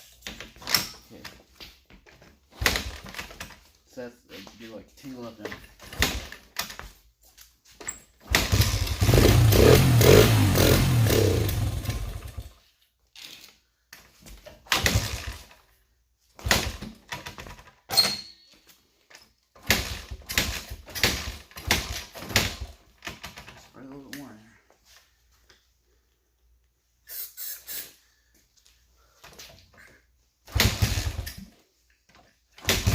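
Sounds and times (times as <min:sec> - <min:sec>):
small engine firing and running: 0:08.3 - 0:12.5, 0:14.8 - 0:15.4, 0:30.5 - 0:31.4
short bursts of sound: 0:27.0 - 0:28.0.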